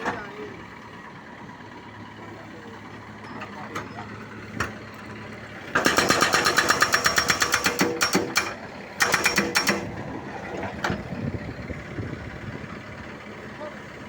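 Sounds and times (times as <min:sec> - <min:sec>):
rapid mechanical rattle: 0:05.7 - 0:10.0.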